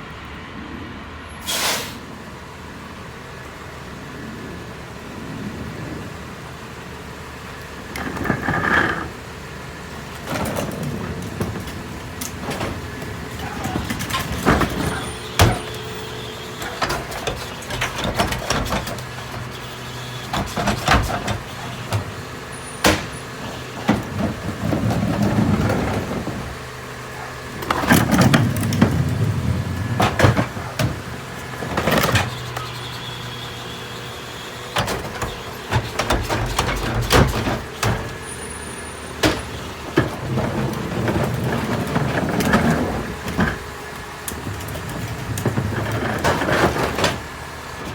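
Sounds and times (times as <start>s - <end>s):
garbage truck hydraulic hum: 1.3s - 47.9s
trash crunching: 6.2s - 47.9s
sharp bangs and knocks: 20.2s - 33.5s.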